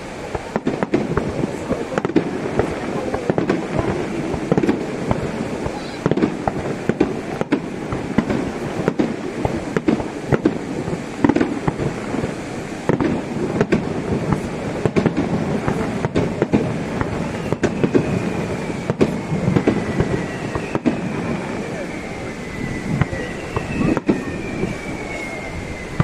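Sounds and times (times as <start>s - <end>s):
continuous rumble: 0.0s - 26.0s
fireworks bangs and crackles: 0.0s - 26.0s.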